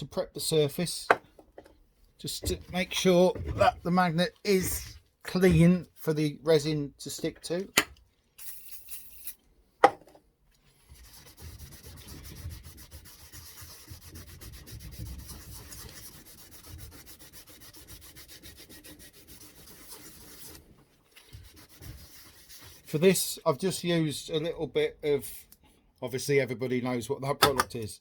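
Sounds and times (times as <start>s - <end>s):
scrubbing metal surface by hand: 10.8s - 23.2s.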